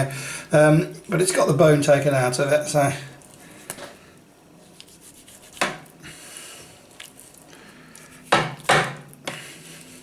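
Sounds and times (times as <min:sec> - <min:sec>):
rubbing on chopping board: 0:04.7 - 0:05.8.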